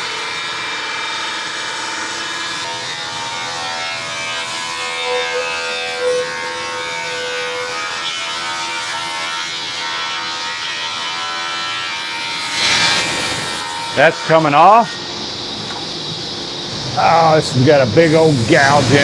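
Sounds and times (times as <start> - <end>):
rip saw humming: 12.3 - 19.0.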